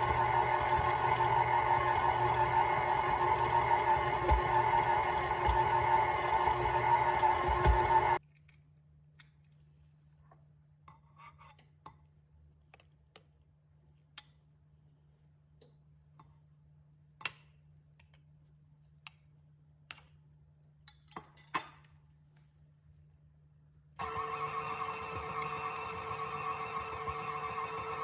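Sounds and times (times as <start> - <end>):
utensil scraping dish: 0.0 - 8.2.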